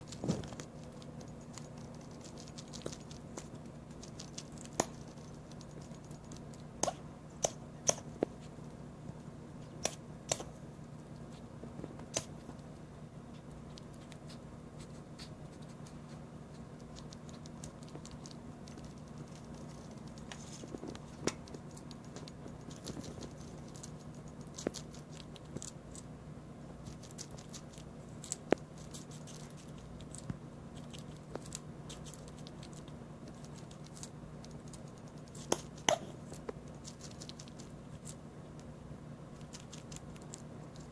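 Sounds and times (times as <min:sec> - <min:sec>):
squirrel sneezing: 0:35.4 - 0:36.3.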